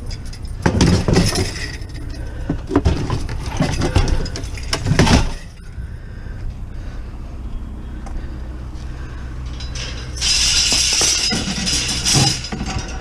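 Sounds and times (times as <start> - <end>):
scrap clunks and clinks: 0.0 - 5.8, 9.0 - 13.0.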